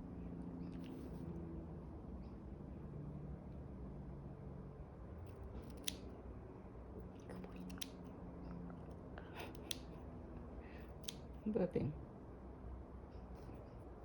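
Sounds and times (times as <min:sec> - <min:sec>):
scissors snipping hair: 0:05.3 - 0:06.1, 0:07.4 - 0:08.1, 0:09.4 - 0:10.0, 0:10.9 - 0:11.4.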